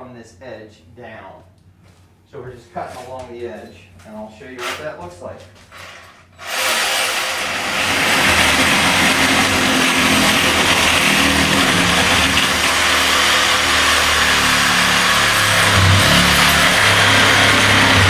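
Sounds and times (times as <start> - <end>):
power tool cutting wallboard: 5.8 - 18.0.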